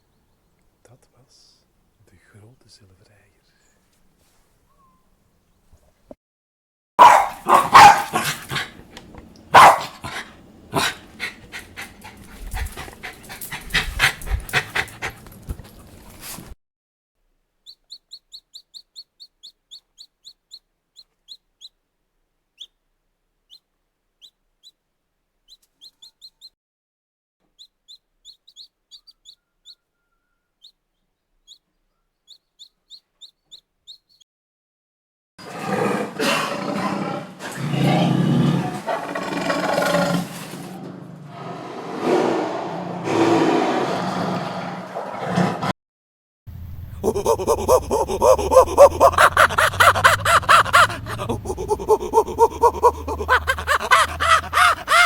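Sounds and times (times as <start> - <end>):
dog barking and yelping: 7.0 - 8.8, 9.5 - 15.2, 47.0 - 55.0
loud rough roar: 35.4 - 45.7.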